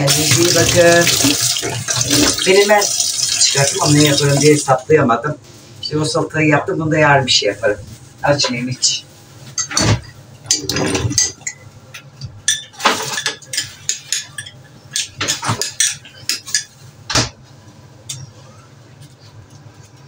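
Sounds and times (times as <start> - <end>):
dishes and cutlery clinking: 9.5 - 17.4.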